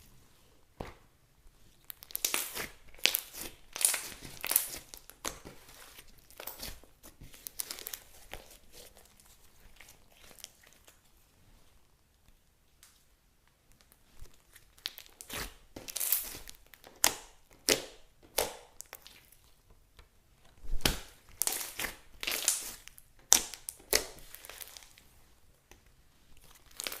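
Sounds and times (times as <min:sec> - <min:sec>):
slime squishing and crackling: 0:01.7 - 0:11.1, 0:13.8 - 0:19.6, 0:20.5 - 0:25.1, 0:25.9 - 0:27.0.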